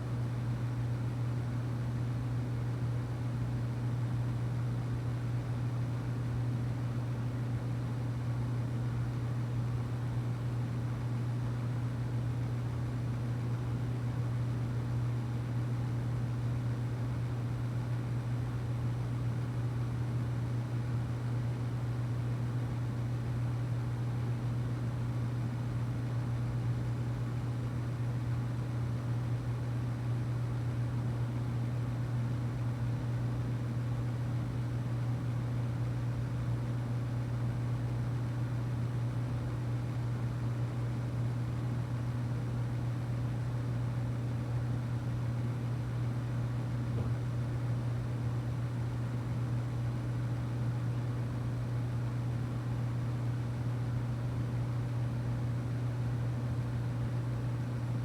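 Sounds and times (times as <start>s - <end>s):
steady low hum: 45.7s - 50.5s.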